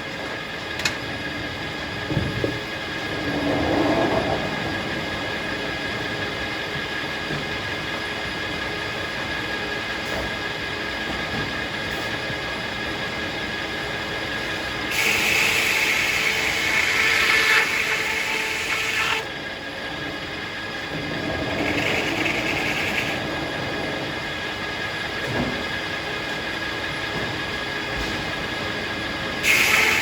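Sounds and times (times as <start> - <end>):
sawmill running: 5.1 - 30.0
saw blade cutting log: 14.9 - 19.3, 21.6 - 23.2, 29.4 - 30.0.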